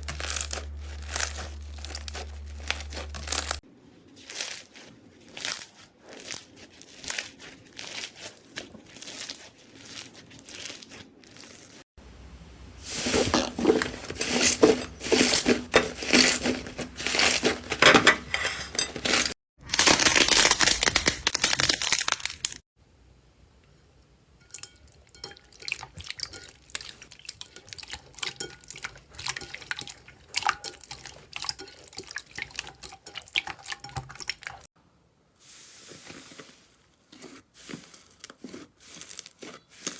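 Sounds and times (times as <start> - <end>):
slime squishing and crackling: 0.0 - 11.8, 19.6 - 22.6, 35.9 - 39.9.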